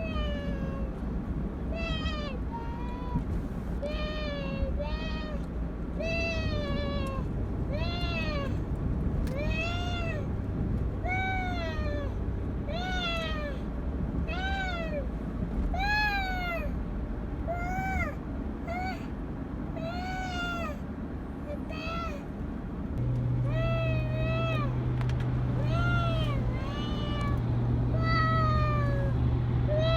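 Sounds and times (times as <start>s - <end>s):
low car rumble: 0.0s - 29.9s
cat meowing: 6.0s - 8.5s, 12.7s - 13.6s, 23.5s - 24.8s, 25.6s - 27.4s, 28.0s - 29.2s.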